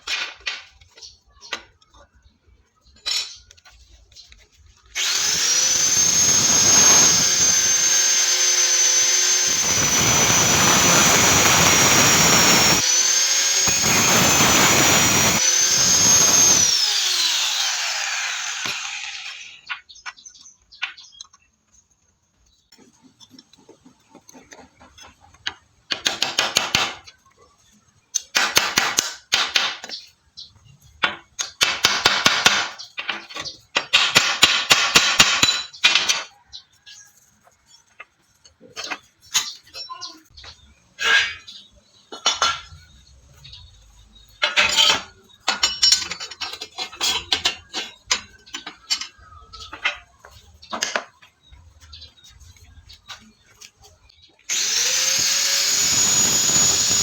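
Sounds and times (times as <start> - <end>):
power grinder whining: 4.9 - 19.7, 54.5 - 57.0.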